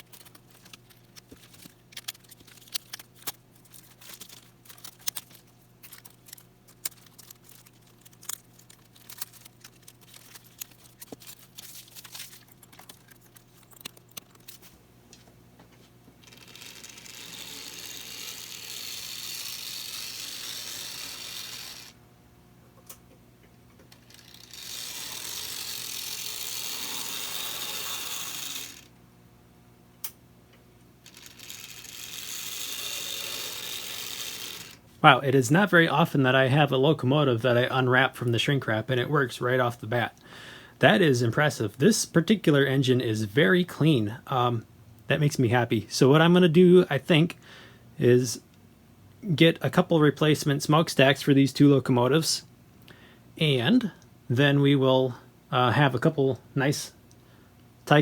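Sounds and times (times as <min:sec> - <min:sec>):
toy locomotive motor whirring: 0:00.0 - 0:14.6, 0:16.2 - 0:22.0, 0:23.9 - 0:28.9, 0:31.0 - 0:34.8
shrink wrap crinkling: 0:00.0 - 0:14.8.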